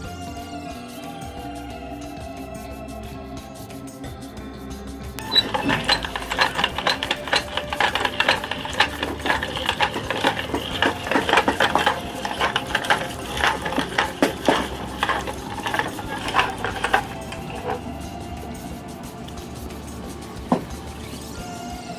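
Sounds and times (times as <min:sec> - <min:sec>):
cones crunching: 0:05.2 - 0:18.0
meat grinder motor humming: 0:05.2 - 0:21.1.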